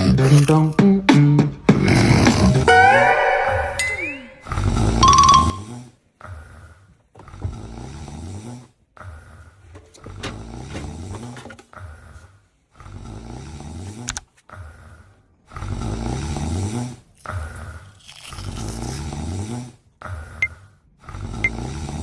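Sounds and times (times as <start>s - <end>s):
loud rattling snores: 0.0s - 0.7s, 1.8s - 2.7s, 4.4s - 6.0s, 7.2s - 11.4s, 12.0s - 22.0s
breaths: 6.2s - 8.0s, 9.0s - 9.9s, 11.6s - 13.0s, 14.4s - 15.7s, 19.9s - 22.0s.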